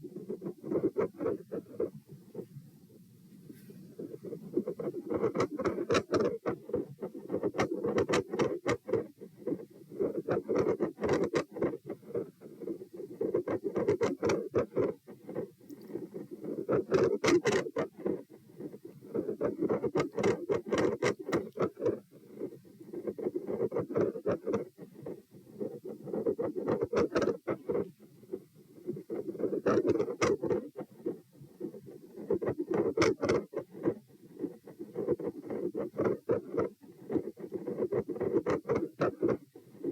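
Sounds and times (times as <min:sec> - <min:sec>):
scratchy clicks from stethoscope: 0:04.9 - 0:09.1, 0:13.2 - 0:18.2, 0:19.2 - 0:22.0, 0:29.0 - 0:31.2, 0:32.2 - 0:39.9.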